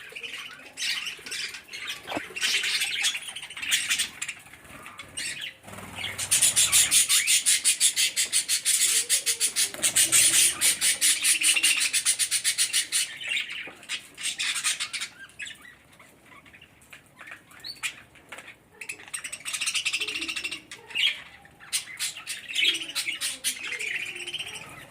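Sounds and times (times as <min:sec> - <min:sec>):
budgerigars chattering and squawking: 0:00.0 - 0:24.9.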